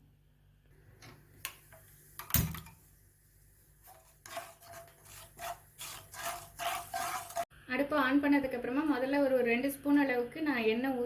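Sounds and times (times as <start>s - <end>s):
spoon scraping in a pan: 3.7s - 7.5s.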